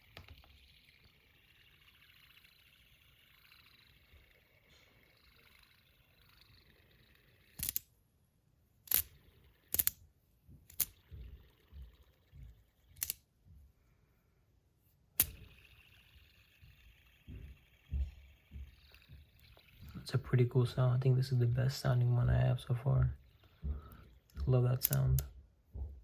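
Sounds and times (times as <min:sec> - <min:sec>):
fidget spinner bearing whir: 0:00.0 - 0:08.0, 0:08.7 - 0:13.9, 0:14.9 - 0:25.9
sharp metallic clicks: 0:07.5 - 0:07.9, 0:08.9 - 0:10.0, 0:13.0 - 0:13.2, 0:15.2 - 0:15.6, 0:24.3 - 0:25.3.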